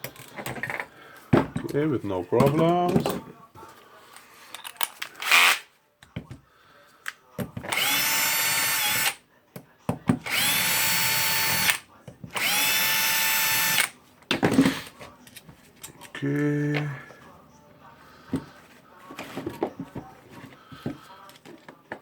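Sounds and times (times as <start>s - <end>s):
electric drill-driver running: 7.7s - 9.2s, 10.3s - 11.8s, 12.4s - 13.9s.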